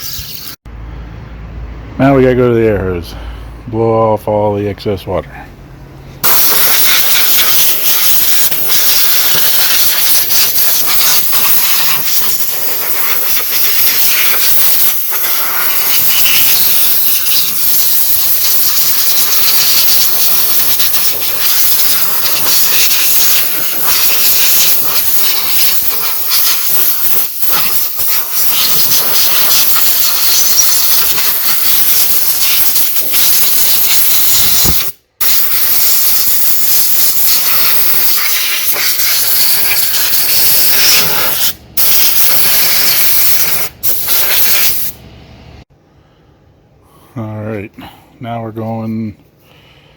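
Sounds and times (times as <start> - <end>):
air hose hissing: 6.2 - 45.0.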